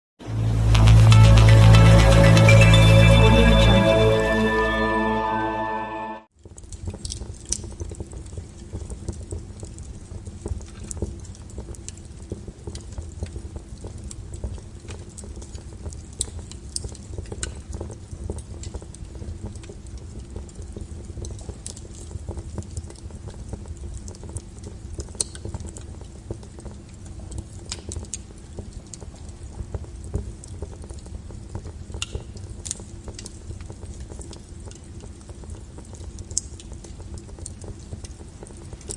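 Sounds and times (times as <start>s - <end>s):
wood fire crackling: 14.5s - 38.9s.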